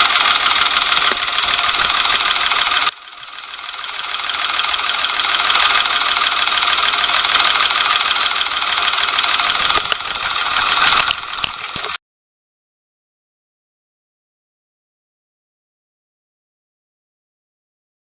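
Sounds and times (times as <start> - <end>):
engine rattling and knocking: 0.0 - 12.0.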